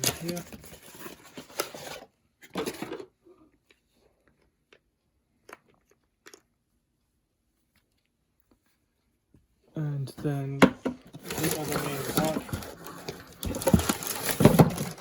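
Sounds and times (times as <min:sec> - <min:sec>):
plastic scrape: 0:00.0 - 0:03.2, 0:11.1 - 0:15.0.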